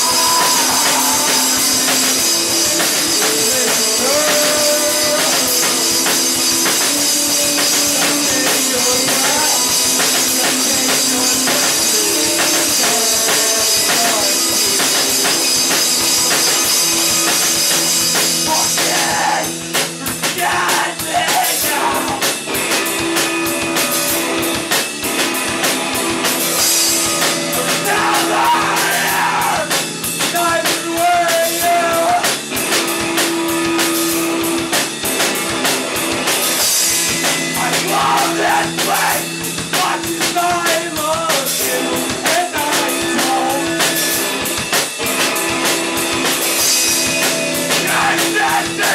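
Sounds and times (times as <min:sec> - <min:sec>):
heavy cymbal wash: 0:00.0 - 0:04.1
person singing: 0:00.0 - 0:15.8, 0:18.4 - 0:22.4, 0:27.5 - 0:32.3, 0:37.6 - 0:44.2, 0:47.6 - 0:48.9
live rock band playing: 0:00.0 - 0:48.9.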